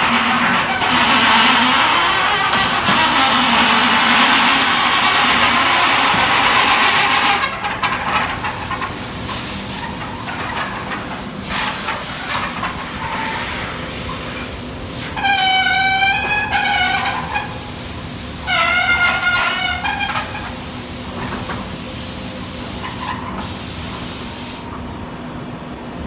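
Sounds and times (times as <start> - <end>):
steel shutter slats grinding: 0.0 - 13.5
pitched squeal: 0.0 - 14.3, 15.1 - 20.6.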